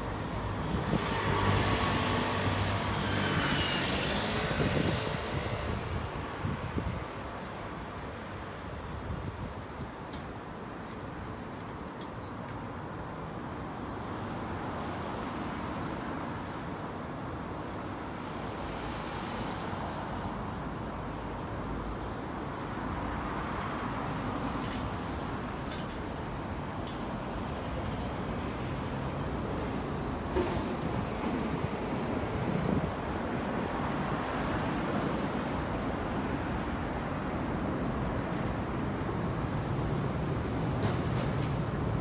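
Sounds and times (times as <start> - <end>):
cars passing by: 0.0 - 9.2, 14.0 - 42.0.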